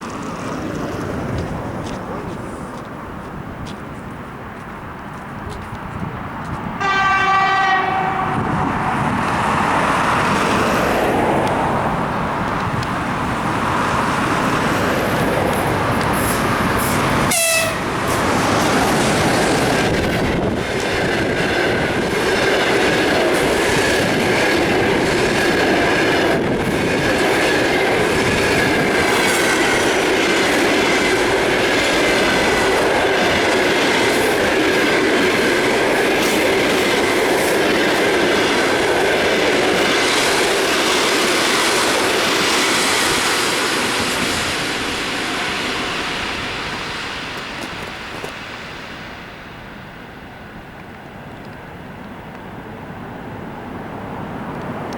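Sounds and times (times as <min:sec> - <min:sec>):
locomotive horn: 0:06.8 - 0:08.6, 0:17.3 - 0:18.0
train wheels clattering over rail joints: 0:12.4 - 0:44.9.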